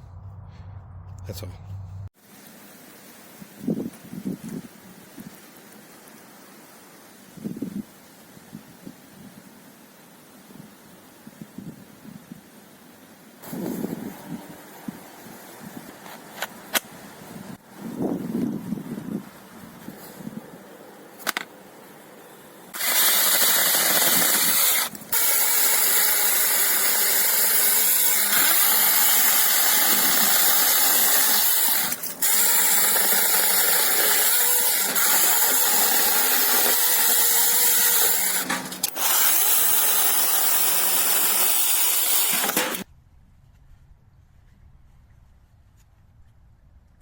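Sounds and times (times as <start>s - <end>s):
battery chainsaw whining: 22.7s - 42.8s.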